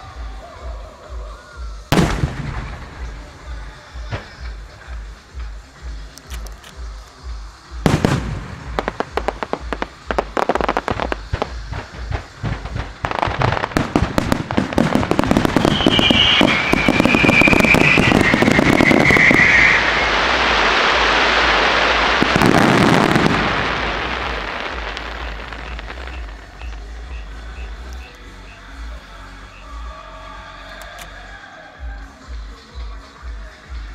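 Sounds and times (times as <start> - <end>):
fireworks bangs and crackles: 0.1 - 28.9
high firework whistle: 7.2 - 31.9.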